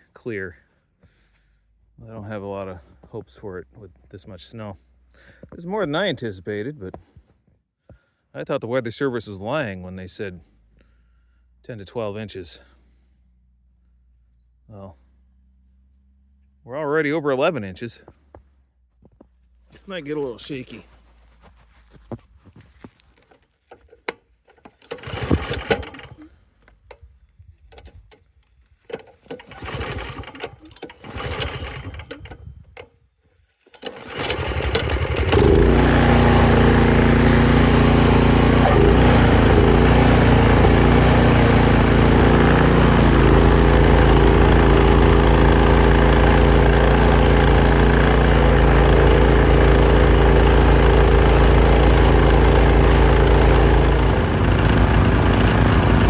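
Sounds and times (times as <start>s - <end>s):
knocks and scuffs: 18.0s - 23.5s
small engine running: 24.8s - 26.3s, 29.3s - 32.4s, 33.7s - 56.0s.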